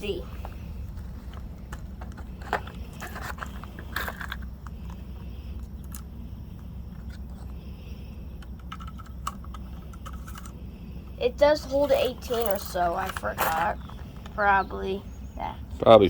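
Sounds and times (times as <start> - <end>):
low steady rumble: 0.0 - 16.0
metallic clicks of cartridges: 1.3 - 7.6, 8.4 - 10.6.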